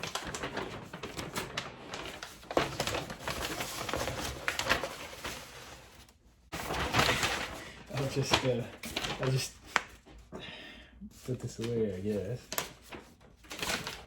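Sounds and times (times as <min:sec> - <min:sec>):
packaging clicks and rustling: 0:00.0 - 0:05.7.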